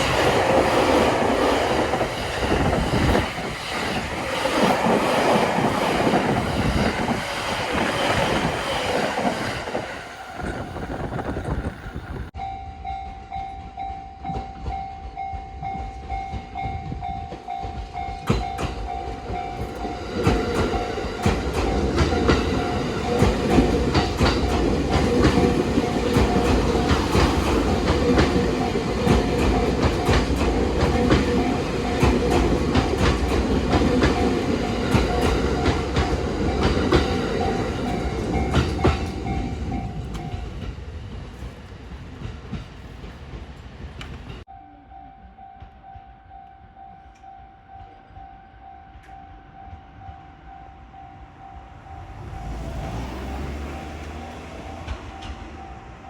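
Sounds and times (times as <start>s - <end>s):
level crossing warning bell: 12.3s - 40.7s, 44.5s - 56.0s
train wheels clicking over rail joints: 13.5s - 44.5s, 52.0s - 56.0s.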